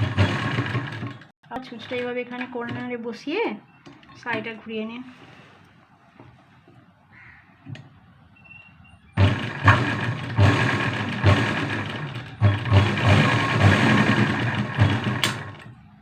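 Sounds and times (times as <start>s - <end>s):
sewing machine running fast: 0.0s - 1.2s, 9.2s - 15.6s.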